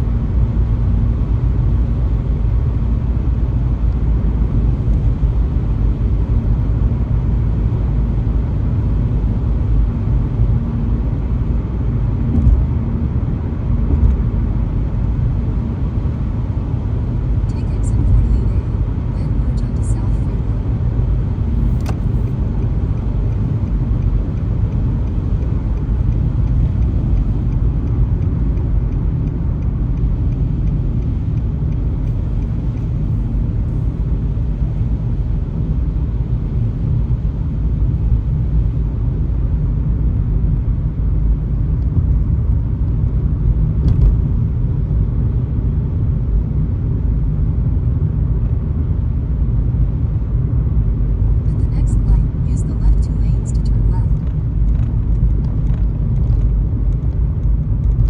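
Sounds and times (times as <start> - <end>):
car road and engine rumble: 0.0 - 58.0.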